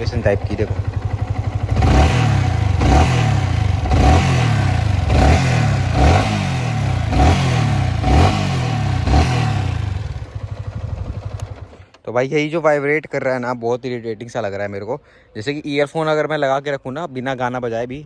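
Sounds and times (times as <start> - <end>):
motorcycle engine revving: 0.0 - 12.0.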